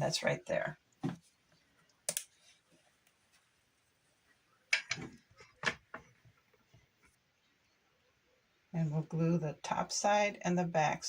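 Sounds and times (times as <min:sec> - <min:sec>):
wooden board knocks and clicks: 0:04.7 - 0:06.1.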